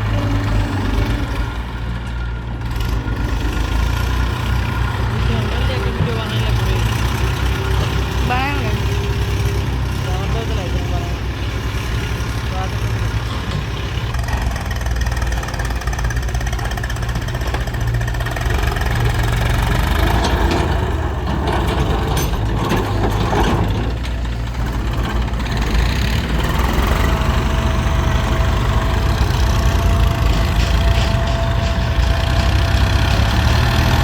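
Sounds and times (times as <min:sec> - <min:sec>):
heavy diesel engine running: 0:00.0 - 0:34.0.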